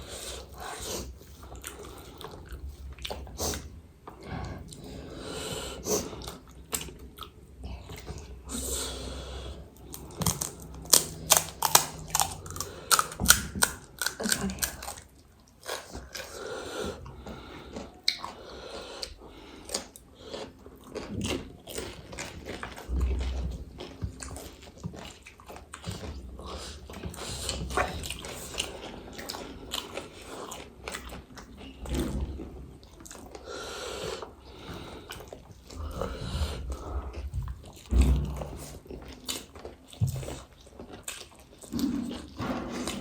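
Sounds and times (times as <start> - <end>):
chewing crunchy snacks: 9.8 - 43.0
sharp crackles of breaking crisps: 10.2 - 15.1.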